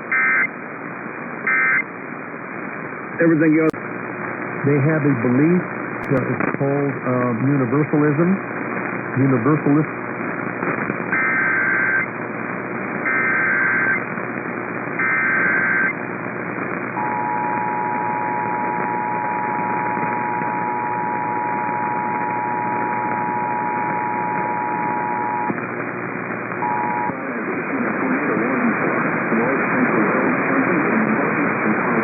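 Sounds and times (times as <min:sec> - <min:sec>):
radio background hiss: 0:00.0 - 0:32.0
warbling data header bursts: 0:15.0 - 0:15.9, 0:17.0 - 0:25.5
two-tone attention signal: 0:17.0 - 0:25.5, 0:26.6 - 0:27.1.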